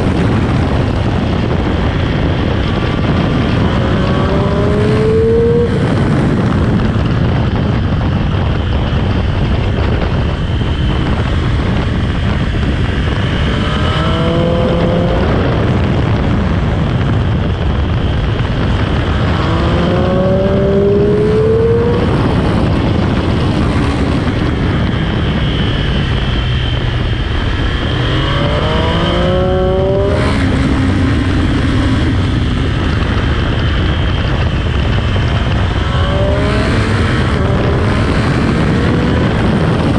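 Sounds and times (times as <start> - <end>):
motorcycle engine accelerating: 0.0 - 39.9
wind and road noise: 0.0 - 39.9.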